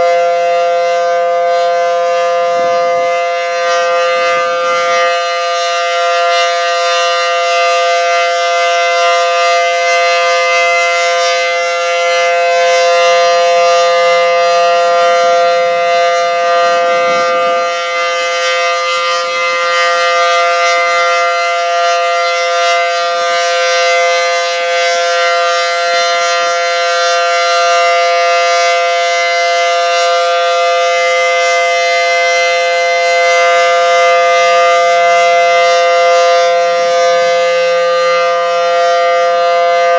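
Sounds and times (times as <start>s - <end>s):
outdoor warning siren: 0.0s - 39.9s.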